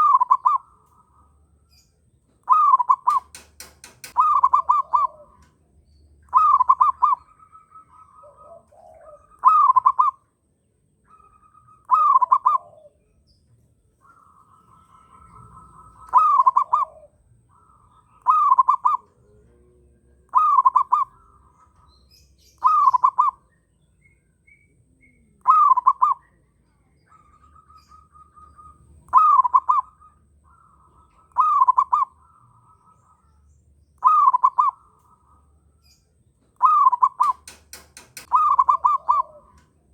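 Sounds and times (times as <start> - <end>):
dove cooing: 0.0 - 10.3, 11.0 - 13.2, 14.0 - 39.9
other birds calling: 0.0 - 39.9.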